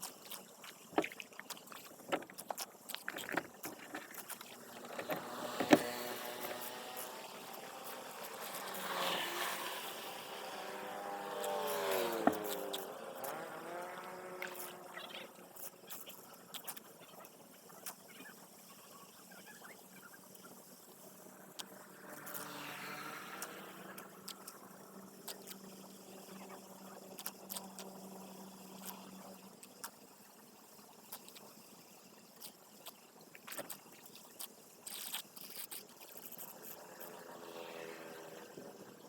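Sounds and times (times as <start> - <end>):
motor engine passing by: 4.6 - 15.4, 21.2 - 27.0, 36.9 - 39.0.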